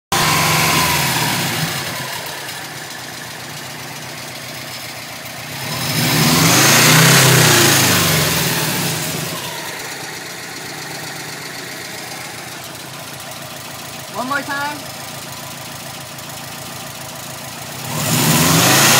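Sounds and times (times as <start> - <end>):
car engine idling and revving: 0.1 - 18.9.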